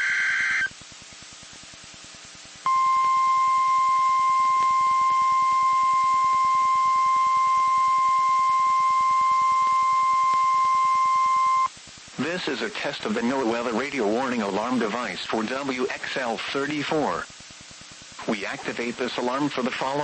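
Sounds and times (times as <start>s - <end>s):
radio receiver hiss: 0.0s - 20.0s
steady warning alarm tone: 2.7s - 11.7s.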